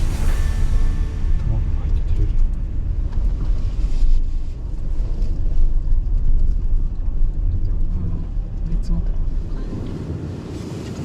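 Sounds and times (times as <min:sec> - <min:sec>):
car driving slowly: 0:00.0 - 0:11.0.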